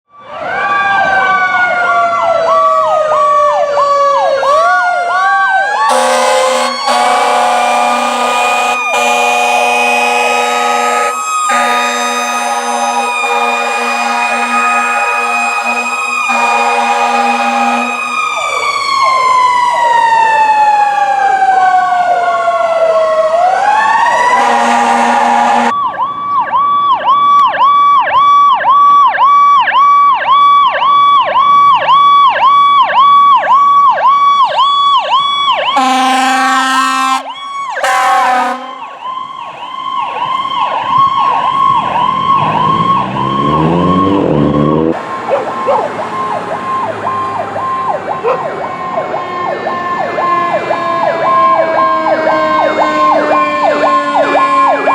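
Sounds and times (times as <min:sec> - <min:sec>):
rising siren whoops: 0:00.1 - 0:54.9
siren wail: 0:00.1 - 0:54.9
horn blasts: 0:05.9 - 0:18.4, 0:24.2 - 0:25.7, 0:35.8 - 0:39.0, 0:52.1 - 0:54.9.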